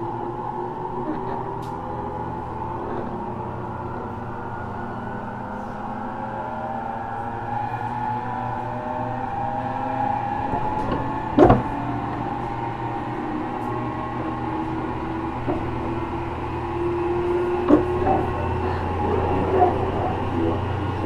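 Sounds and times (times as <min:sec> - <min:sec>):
low train rumble: 0:00.0 - 0:21.0
train motor whine: 0:00.0 - 0:21.0
wheels clanking over rail joints: 0:00.0 - 0:21.0.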